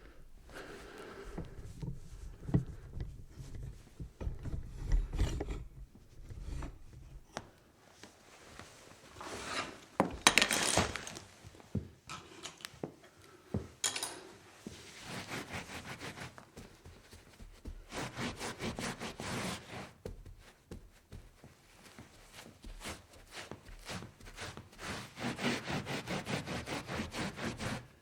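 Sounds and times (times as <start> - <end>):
rubbing and scrubbing strokes: 0.5 - 5.3, 14.6 - 28.0
objects knocking and clinking: 10.1 - 11.2, 13.8 - 14.3.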